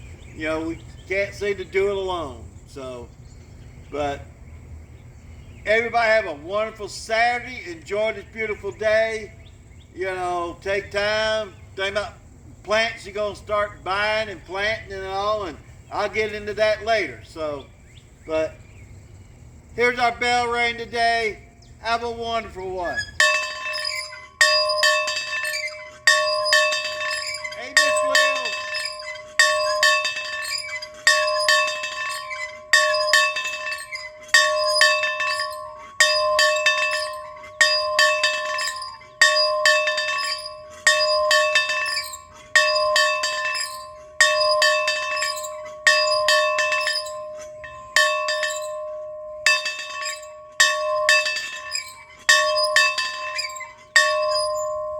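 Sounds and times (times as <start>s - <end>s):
bell ringing: 23.0s - 54.9s.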